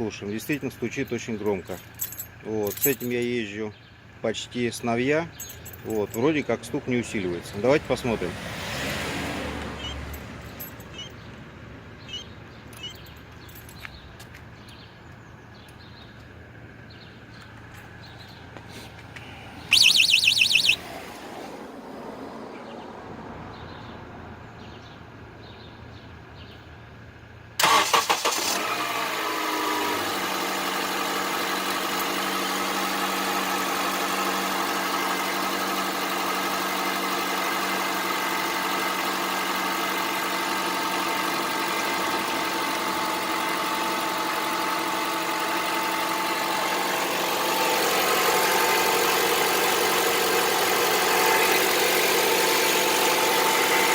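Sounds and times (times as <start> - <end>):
high-pitched rapid chatter: 19.7 - 20.8
car engine starting and idling: 26.4 - 53.9.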